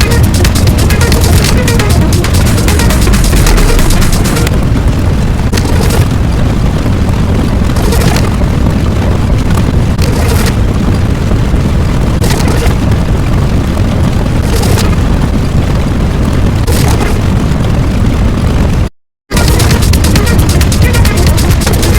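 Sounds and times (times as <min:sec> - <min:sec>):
hissing flare: 0:00.0 - 0:18.0, 0:19.3 - 0:21.9
low explosion rumble: 0:00.0 - 0:21.9.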